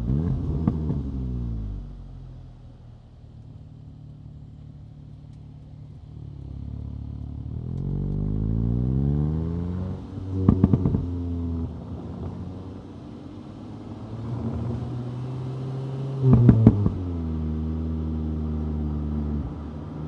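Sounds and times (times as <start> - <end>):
car engine revving: 0.0 - 2.6, 6.2 - 19.8.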